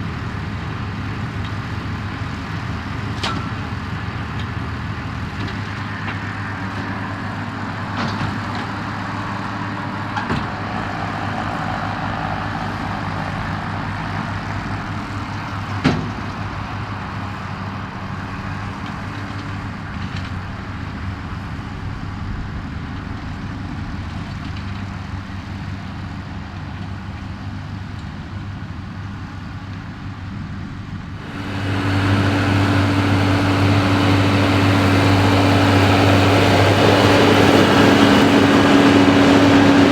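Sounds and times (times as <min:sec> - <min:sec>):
tractor engine hum: 0:00.0 - 0:39.9
baler machinery noise: 0:31.1 - 0:39.9.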